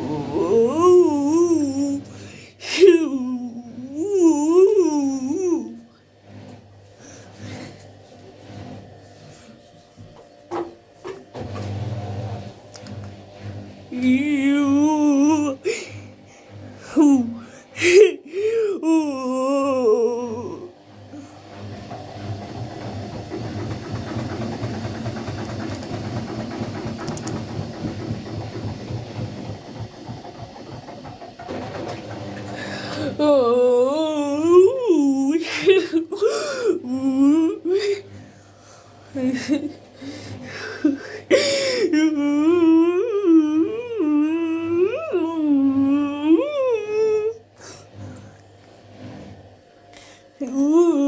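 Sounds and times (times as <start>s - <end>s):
washing machine hum: 0.0s - 51.0s
noisy breath: 2.1s - 2.6s, 32.4s - 33.2s, 37.9s - 39.1s, 40.0s - 41.9s, 49.9s - 50.4s
rapid irregular knocking: 21.5s - 33.2s.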